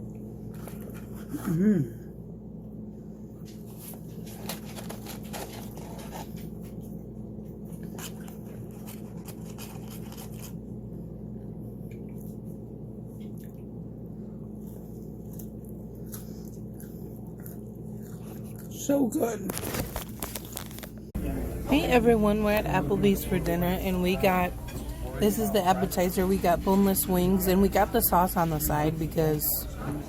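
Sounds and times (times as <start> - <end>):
quiet chewing noises: 0.0 - 1.6, 3.4 - 21.1
steady low hum: 0.0 - 30.0.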